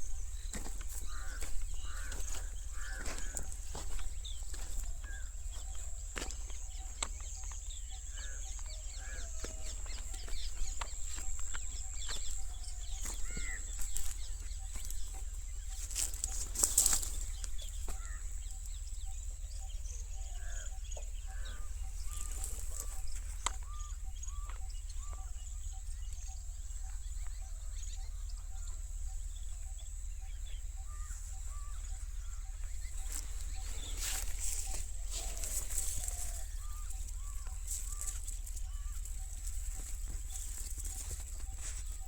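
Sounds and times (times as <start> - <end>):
chickens clucking: 0.0 - 18.6.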